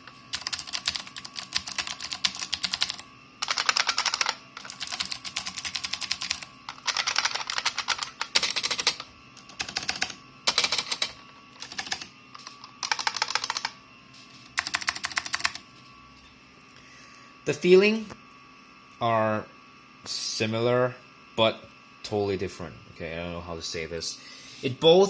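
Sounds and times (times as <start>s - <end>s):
typing on mechanical keyboard: 0.3s - 12.1s, 12.8s - 13.8s, 14.6s - 15.6s.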